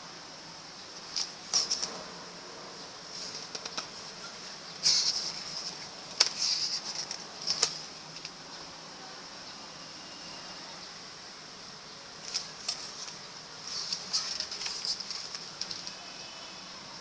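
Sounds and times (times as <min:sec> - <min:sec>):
steady high hiss: 0:00.0 - 0:17.0
paper pages rustling: 0:01.0 - 0:02.0, 0:03.1 - 0:08.4, 0:12.2 - 0:16.1.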